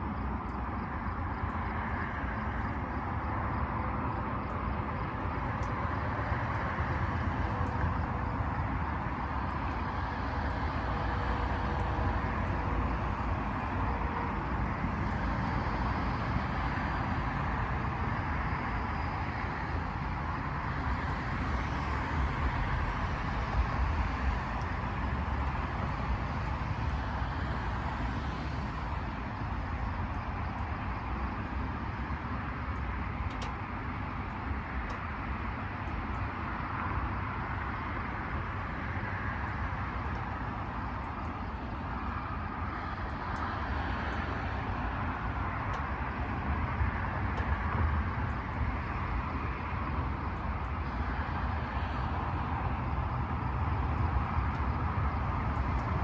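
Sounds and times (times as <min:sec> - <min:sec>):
steady low rumble: 0:00.0 - 0:56.0.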